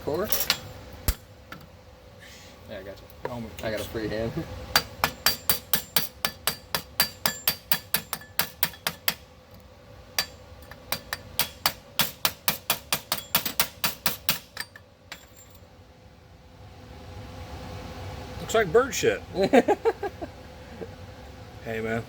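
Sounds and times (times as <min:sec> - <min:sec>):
hammer striking steel pipe: 0:04.7 - 0:09.2, 0:10.2 - 0:15.4.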